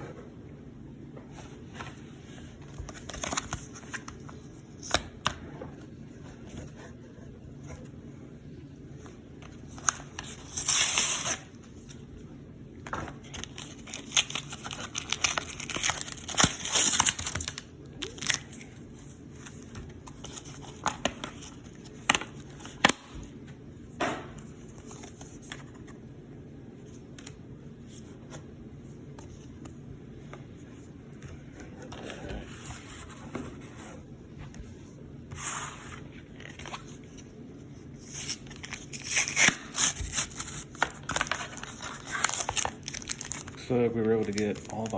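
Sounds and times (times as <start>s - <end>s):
card packaging torn and crinkled: 9.7s - 11.6s, 13.2s - 18.8s, 38.0s - 44.9s.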